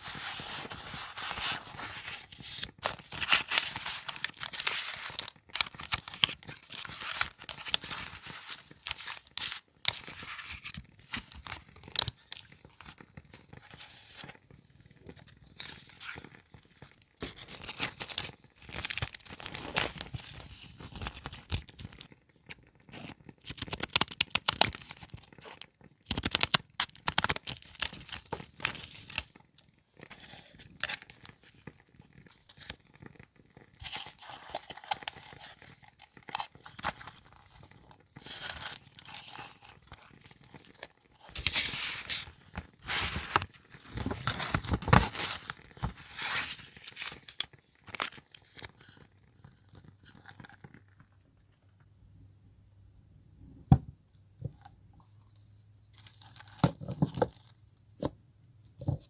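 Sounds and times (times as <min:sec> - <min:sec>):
paper rustling and tearing: 0:00.0 - 0:12.1, 0:38.2 - 0:48.7.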